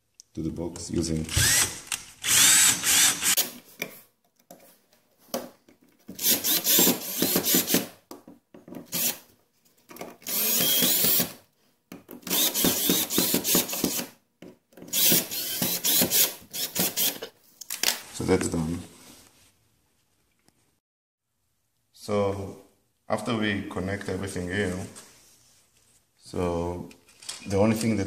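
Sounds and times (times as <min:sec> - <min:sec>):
drill driving screws: 0:01.3 - 0:03.6, 0:06.1 - 0:08.0, 0:08.9 - 0:09.3, 0:10.2 - 0:11.4, 0:12.2 - 0:14.2, 0:14.9 - 0:17.3.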